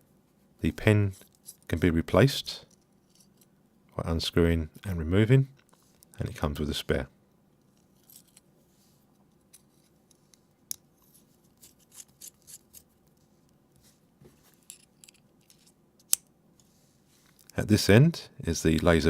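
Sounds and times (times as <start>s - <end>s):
metal pen clicks and scrapes: 11.0s - 12.9s, 14.6s - 16.3s.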